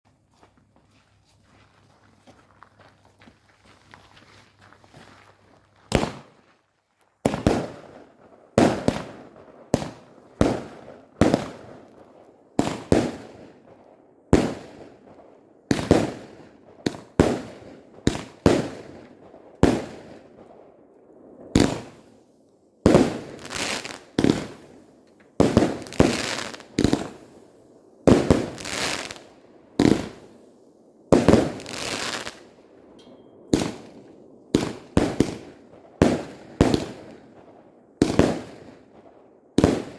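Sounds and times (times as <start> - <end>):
firework shots banging and crackling: 5.9 - 6.4, 7.2 - 20.6, 21.5 - 22.1, 22.8 - 27.4, 28.0 - 30.4, 31.1 - 32.6, 33.5 - 39.9.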